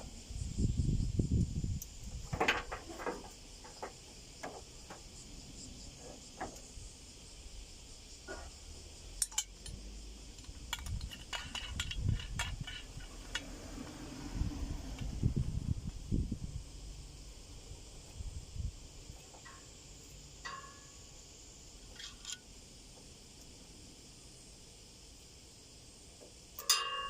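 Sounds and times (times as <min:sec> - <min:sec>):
high insect chirring: 0:00.0 - 0:27.0
small hard objects clinking: 0:10.4 - 0:13.5.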